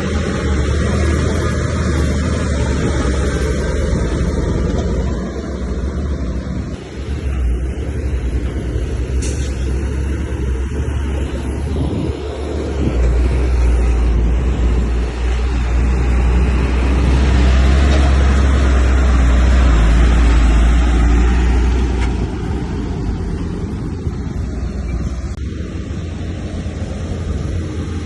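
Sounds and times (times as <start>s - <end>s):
diesel earthmoving machine rumble: 0.0s - 28.0s.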